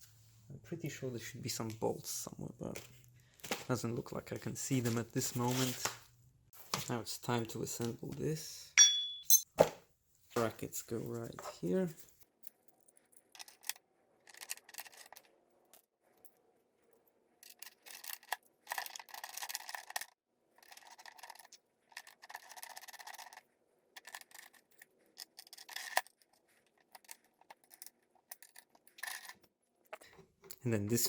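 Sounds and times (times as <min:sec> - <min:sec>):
metal parts clicking: 0:13.2 - 0:15.3, 0:24.0 - 0:26.2.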